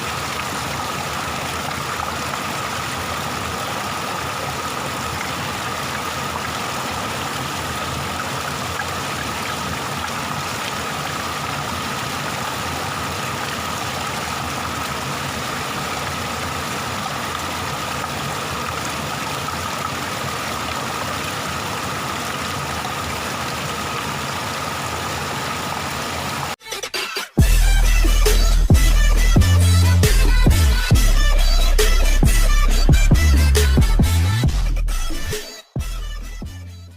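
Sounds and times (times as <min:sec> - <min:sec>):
waterfall rushing: 0:00.0 - 0:26.6.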